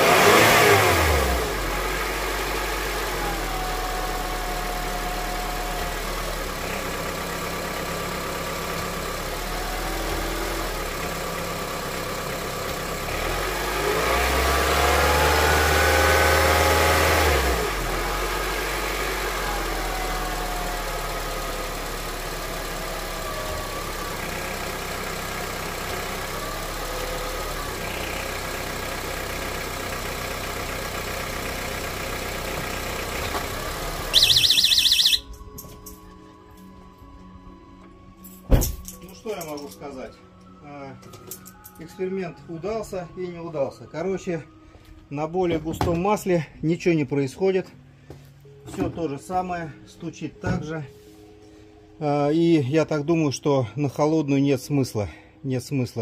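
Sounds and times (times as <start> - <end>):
engine revving: 0.0 - 6.6, 13.0 - 22.0, 32.6 - 35.3
car engine idling with knock: 27.7 - 36.2.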